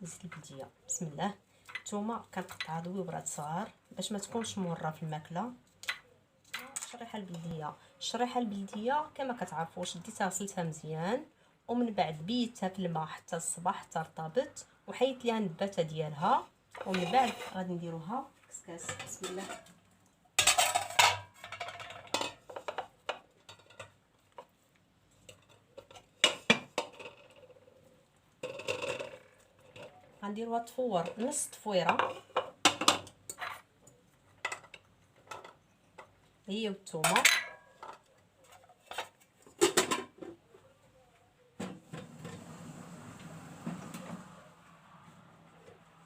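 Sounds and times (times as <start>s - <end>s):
kitchenware clinking: 20.4s - 24.0s, 37.0s - 38.0s
pots and dishes clinking: 37.1s - 38.0s.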